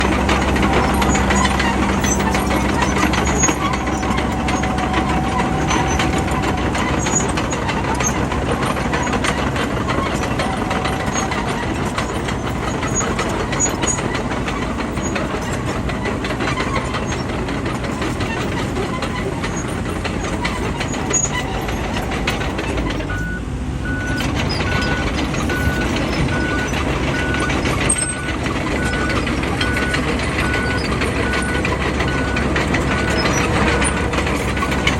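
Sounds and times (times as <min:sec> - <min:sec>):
bulldozer diesel engine running: 0:00.0 - 0:34.9
reversing alarm beeping: 0:20.9 - 0:34.0.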